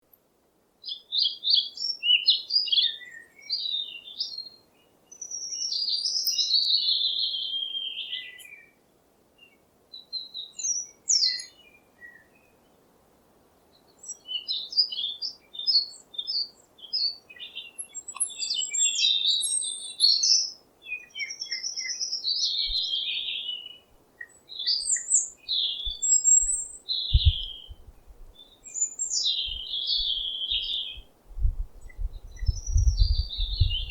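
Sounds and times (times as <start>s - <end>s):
songbirds chirping and trilling: 0.8s - 33.9s
low thumps: 27.1s - 28.3s, 31.3s - 33.9s.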